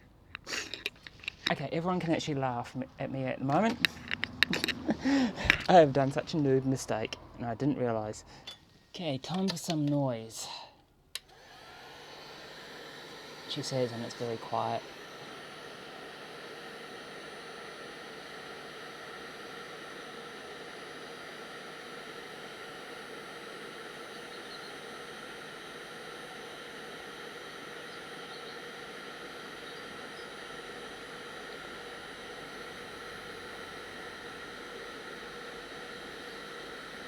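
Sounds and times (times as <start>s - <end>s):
heat gun hiss and whir: 0.0s - 37.0s.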